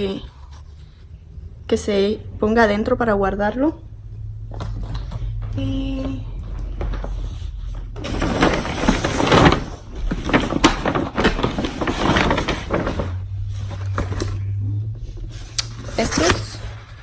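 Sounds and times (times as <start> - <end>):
low steady hum: 0.0 - 17.0
gift packaging rustling: 4.7 - 14.4.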